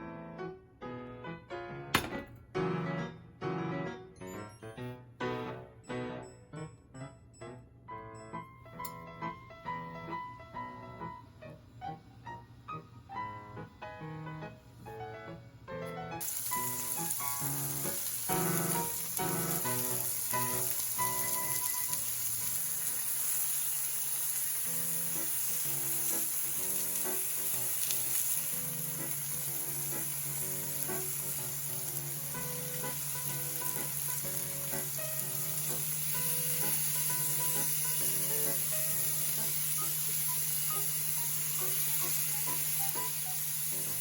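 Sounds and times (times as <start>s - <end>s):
piano music: 0.0s - 44.0s
food sizzling in a frying pan: 16.2s - 44.0s.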